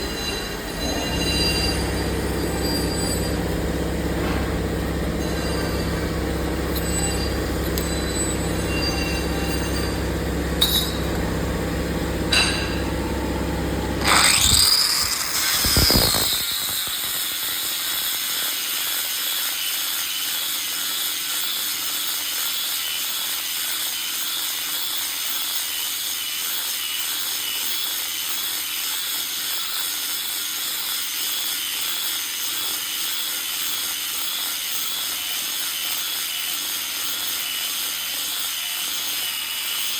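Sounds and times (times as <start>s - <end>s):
shrill squeal: 0.0s - 3.5s, 6.7s - 10.1s, 14.0s - 18.0s
angle grinder grinding steel: 0.0s - 11.2s, 13.8s - 39.9s.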